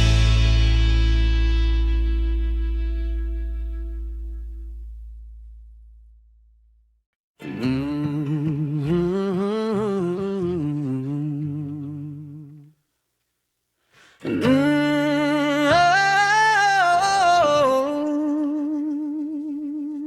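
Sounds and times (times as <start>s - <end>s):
hummed vocal with vibrato: 7.4s - 12.7s, 14.1s - 20.0s.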